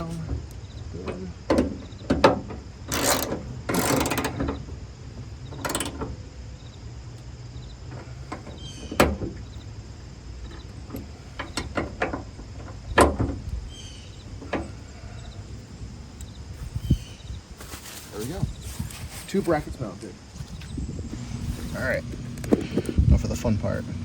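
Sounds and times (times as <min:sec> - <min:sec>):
tool clicks and knocks: 0:01.5 - 0:04.6, 0:05.6 - 0:06.2.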